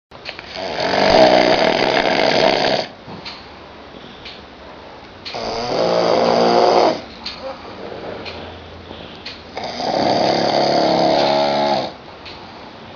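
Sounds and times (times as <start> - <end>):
person snoring loudly: 0.5 - 3.0, 5.3 - 7.0, 9.5 - 12.0.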